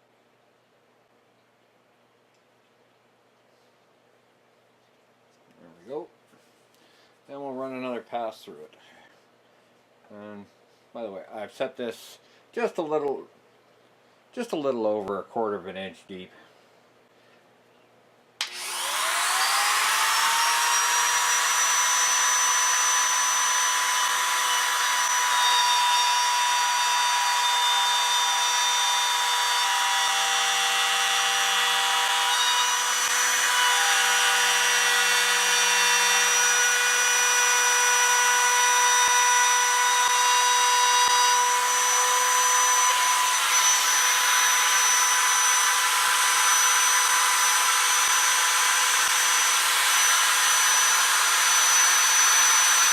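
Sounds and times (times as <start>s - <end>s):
router motor whine: 18.4s - 52.9s.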